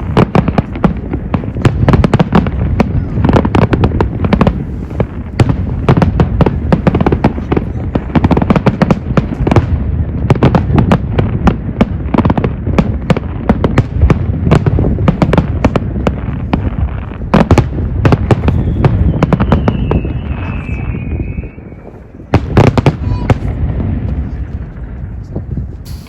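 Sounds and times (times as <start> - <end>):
fireworks bangs and crackles: 0.0 - 26.0
fireworks whistle: 18.4 - 22.0.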